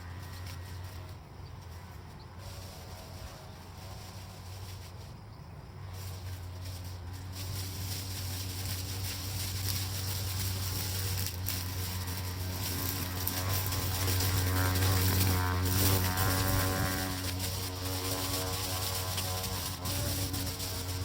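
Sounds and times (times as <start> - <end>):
brushcutter engine droning: 0.0 - 5.1, 5.9 - 21.0
hiss: 5.9 - 21.0.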